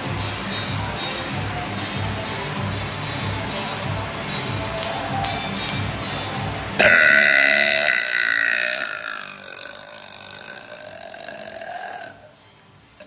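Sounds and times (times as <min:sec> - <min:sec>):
woman burping: 0:06.8 - 0:12.3.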